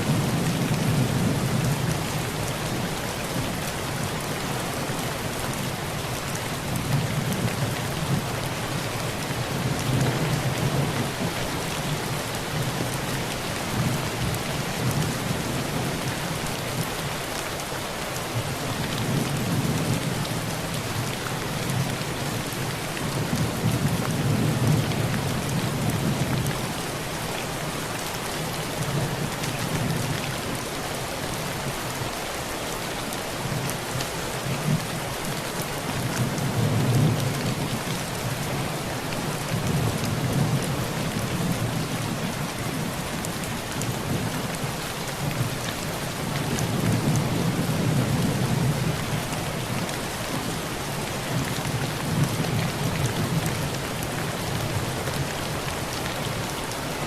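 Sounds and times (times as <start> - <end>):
heavy rain on a tin roof: 0.0 - 57.0.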